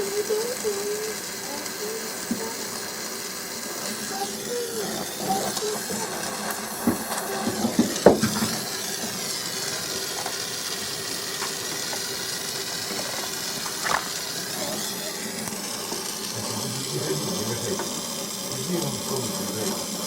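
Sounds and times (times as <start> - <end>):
steady hiss: 0.0 - 20.0.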